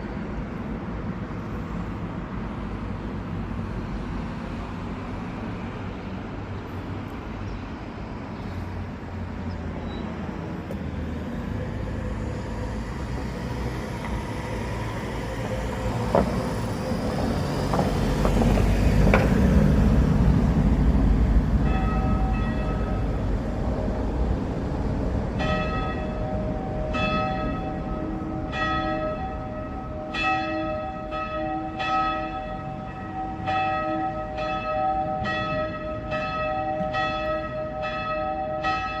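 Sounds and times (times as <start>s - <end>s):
low vehicle rumble: 8.6s - 37.9s
church bells pealing: 11.4s - 39.0s.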